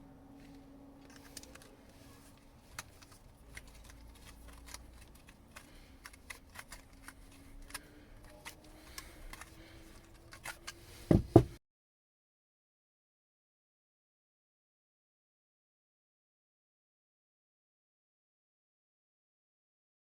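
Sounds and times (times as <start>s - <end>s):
metallic clicks and scrapes: 0.4s - 11.1s
loud thumps: 11.1s - 11.6s.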